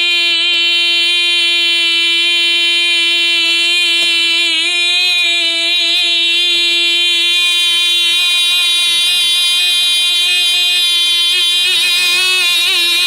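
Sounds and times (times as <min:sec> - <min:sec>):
voice holding a long note: 0:07.8 - 0:13.0.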